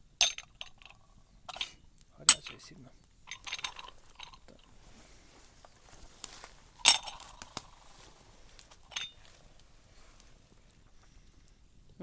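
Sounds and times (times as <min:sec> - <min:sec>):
teacup clinking with ring: 0:00.2 - 0:02.7, 0:03.3 - 0:04.7, 0:06.8 - 0:07.4, 0:08.8 - 0:09.3
teaware clicks and knocks: 0:00.2 - 0:02.7.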